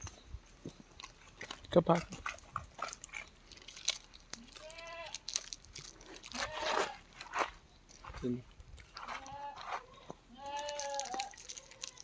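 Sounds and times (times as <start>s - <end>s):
livestock bleating: 4.4s - 5.2s, 6.3s - 7.0s, 9.2s - 12.0s.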